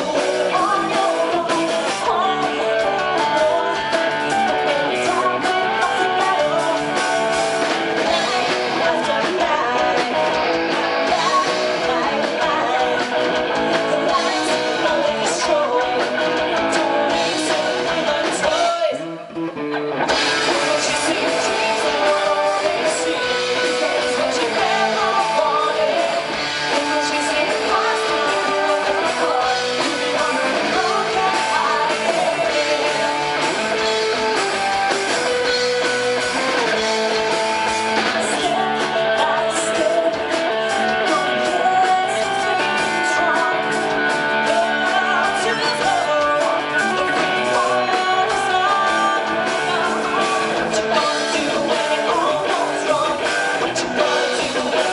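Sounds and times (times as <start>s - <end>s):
person singing: 0.0s - 19.4s, 20.1s - 54.9s
rock band playing live: 0.0s - 54.9s.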